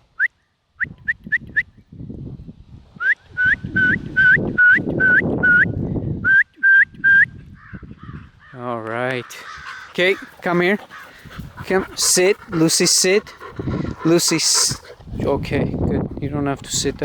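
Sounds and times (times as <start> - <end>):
person whistling: 3.0 - 7.3.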